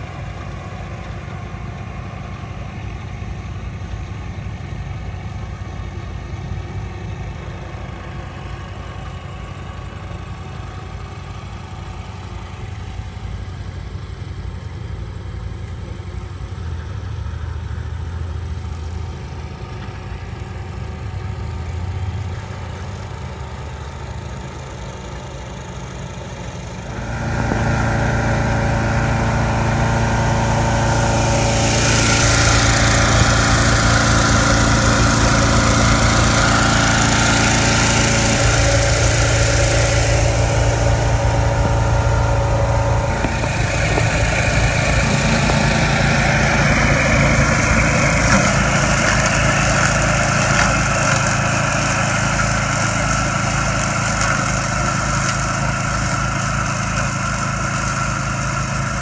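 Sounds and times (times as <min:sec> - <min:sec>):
mower engines running: 0:00.0 - 0:59.0.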